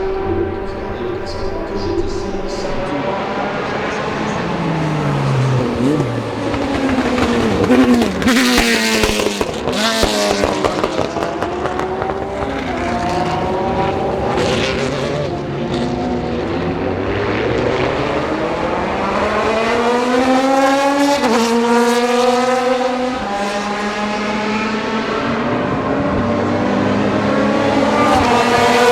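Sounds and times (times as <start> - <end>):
race car engine at full revs: 0.0 - 28.9
exhaust crackles and pops: 5.6 - 13.8.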